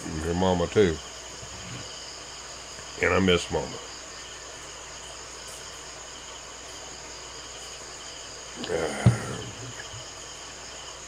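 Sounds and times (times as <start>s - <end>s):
crickets chirping: 0.0s - 11.0s
knock and rustle: 9.0s - 10.1s.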